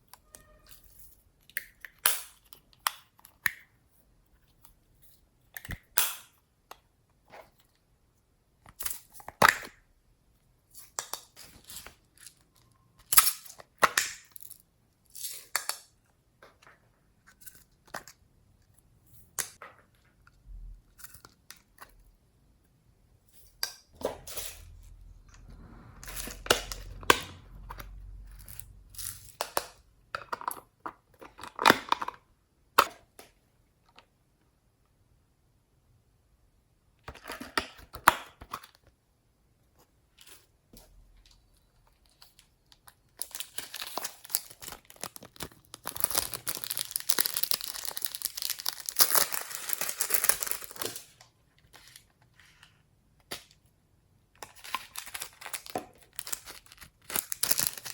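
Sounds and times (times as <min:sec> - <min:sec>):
slime squeezed crackling: 0:43.6 - 0:50.9.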